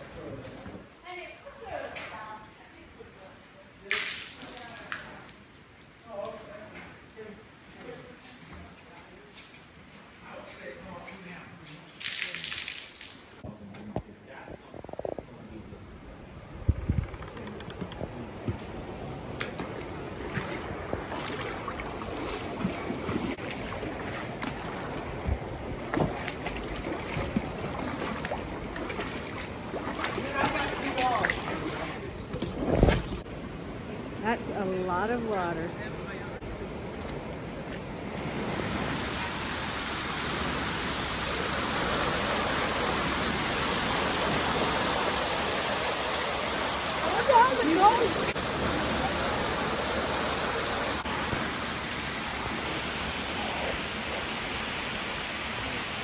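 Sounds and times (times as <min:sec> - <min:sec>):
floodwater rushing: 0:03.8 - 0:05.5, 0:11.9 - 0:13.4, 0:18.0 - 0:33.3, 0:36.6 - 0:56.0.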